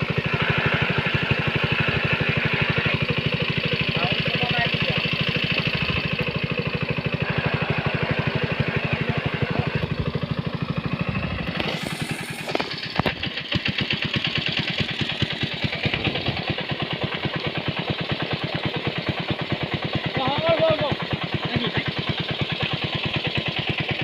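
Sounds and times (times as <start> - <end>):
engine running steadily: 0.0 - 24.0
short hiss: 11.5 - 13.0.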